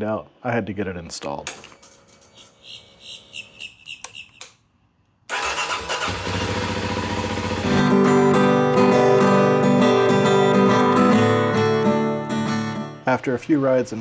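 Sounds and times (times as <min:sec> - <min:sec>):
strummed acoustic guitar music: 0:07.3 - 0:13.2.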